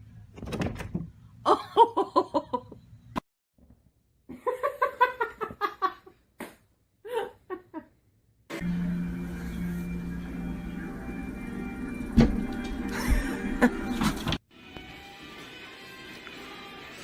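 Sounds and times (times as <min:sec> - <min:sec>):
person laughing: 0:01.5 - 0:02.8, 0:07.0 - 0:07.9, 0:12.9 - 0:14.3.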